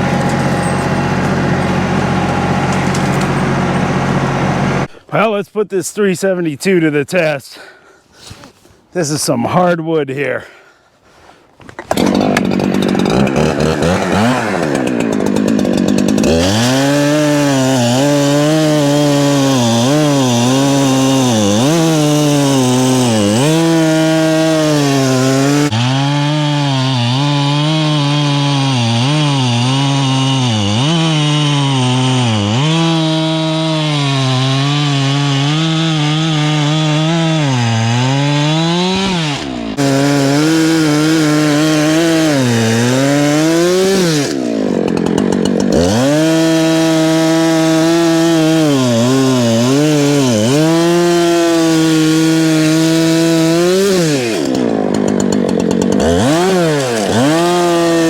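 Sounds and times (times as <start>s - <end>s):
chainsaw cutting log: 0.0s - 5.0s, 11.6s - 58.0s.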